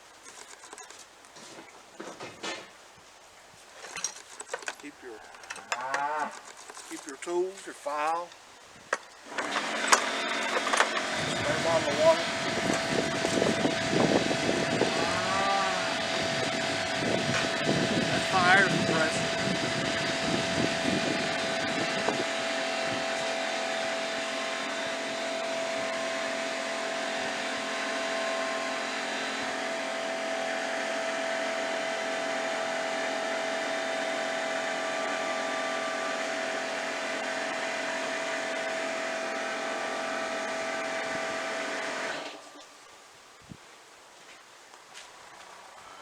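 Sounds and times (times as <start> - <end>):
air compressor running: 9.2 - 42.6.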